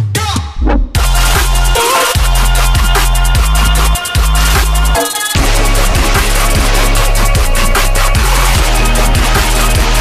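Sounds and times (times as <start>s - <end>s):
sweeping sounds: 0.6s - 1.1s
electronic music with heavy bass: 0.6s - 10.0s.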